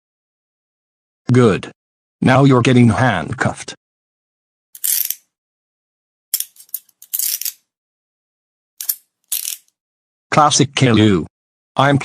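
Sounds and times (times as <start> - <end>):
handcuffs clicking and rattling: 4.8 - 5.2, 6.4 - 7.6, 8.8 - 9.7.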